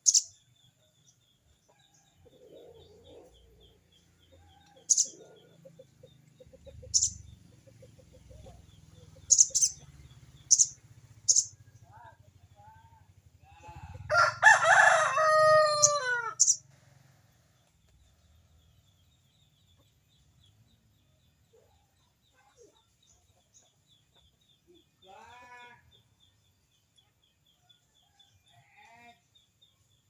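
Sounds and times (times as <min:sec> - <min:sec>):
rooster crowing: 0:13.8 - 0:16.6.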